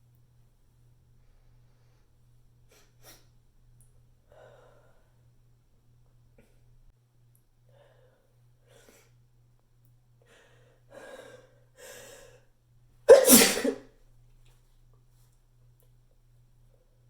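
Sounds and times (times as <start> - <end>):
person sneezing: 13.1 - 13.8.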